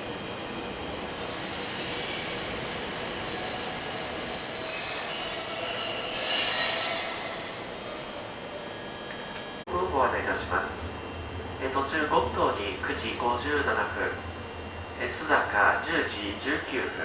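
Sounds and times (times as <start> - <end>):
train rolling noise: 0.0 - 17.0
train wheels squealing on rails: 1.0 - 9.6.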